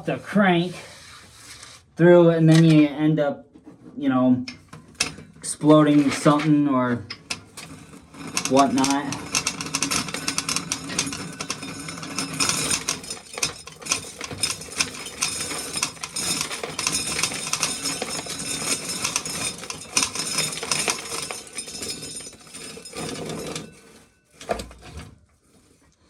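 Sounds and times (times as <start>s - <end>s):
corn sheller clattering: 4.5s - 24.9s.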